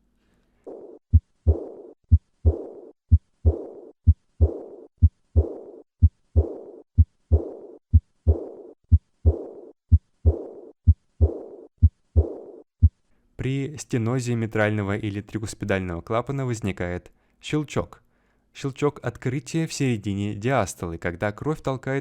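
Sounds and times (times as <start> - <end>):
hissing heart murmur: 0.7 - 8.6, 11.2 - 12.5
heartbeat thumps: 0.7 - 13.0.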